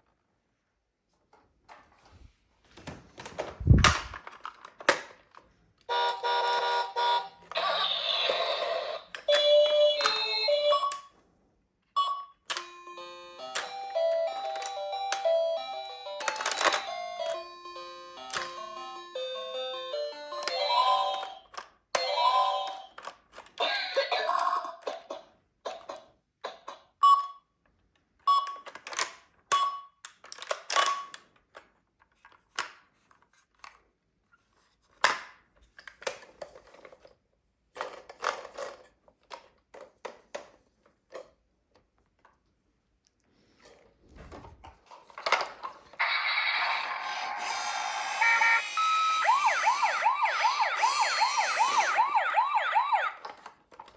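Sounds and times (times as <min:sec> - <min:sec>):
electronic toy siren: 0:05.9 - 0:11.0, 0:46.0 - 0:53.4
toy beeping melody and chimes: 0:05.9 - 0:11.1, 0:12.0 - 0:23.0, 0:27.0 - 0:27.5, 0:46.0 - 0:53.3.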